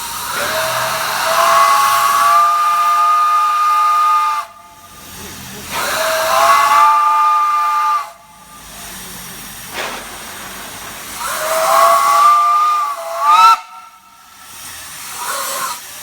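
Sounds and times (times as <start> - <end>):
steam hissing: 0.0 - 16.0
steam whistle chord: 11.2 - 14.3.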